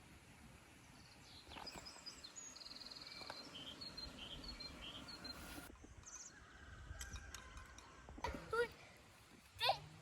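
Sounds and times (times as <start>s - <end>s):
outdoor background noise: 0.0s - 10.0s
small birds chirping: 0.8s - 6.4s.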